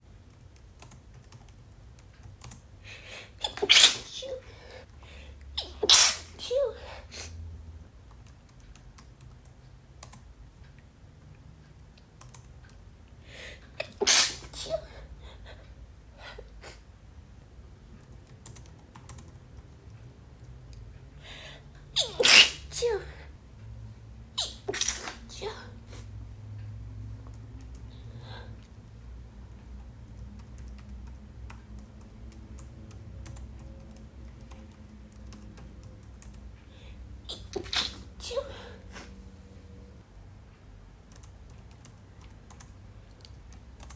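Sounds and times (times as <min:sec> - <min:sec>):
fingers typing on keyboard: 0:00.3 - 0:02.7, 0:08.0 - 0:10.2, 0:12.2 - 0:12.8, 0:18.0 - 0:20.0, 0:30.1 - 0:36.4, 0:41.0 - 0:43.9
person sneezing: 0:03.2 - 0:04.8, 0:05.6 - 0:07.4, 0:13.7 - 0:15.5, 0:22.0 - 0:23.2, 0:24.4 - 0:26.1, 0:37.2 - 0:39.2.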